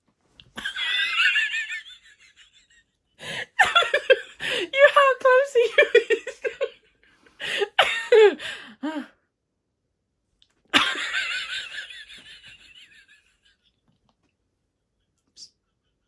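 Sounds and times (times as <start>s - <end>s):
woman laughing: 3.2s - 6.8s, 7.4s - 9.1s, 10.8s - 13.2s.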